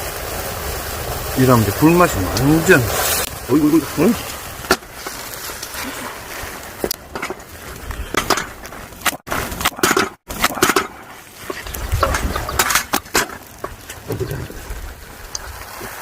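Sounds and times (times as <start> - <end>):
food frying: 0.0 - 7.7.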